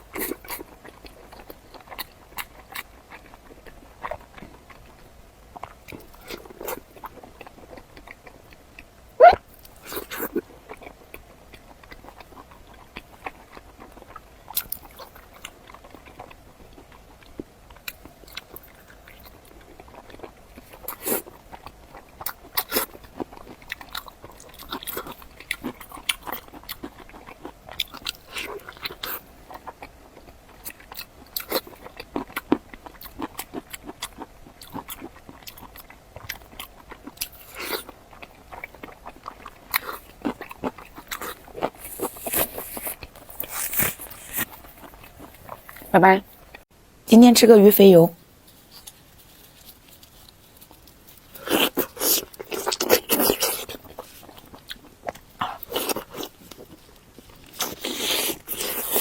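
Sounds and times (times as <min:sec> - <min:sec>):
person biting and chewing food: 0:00.0 - 0:46.6, 0:48.6 - 0:59.0.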